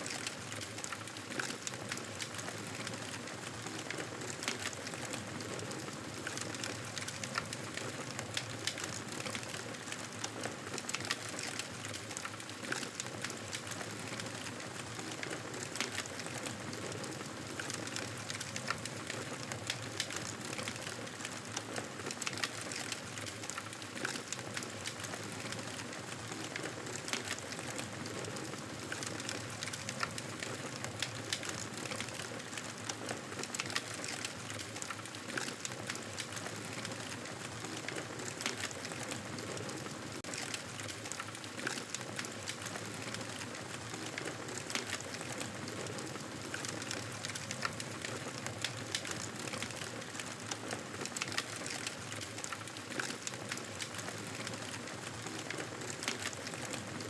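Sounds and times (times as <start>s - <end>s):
campfire crackling and popping: 6.2s - 56.9s.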